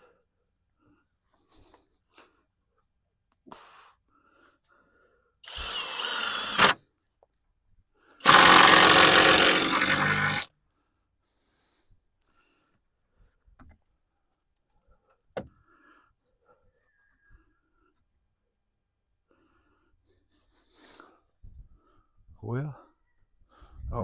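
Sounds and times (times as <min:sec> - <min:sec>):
power drill driving screws: 0:05.4 - 0:06.8, 0:08.2 - 0:10.5.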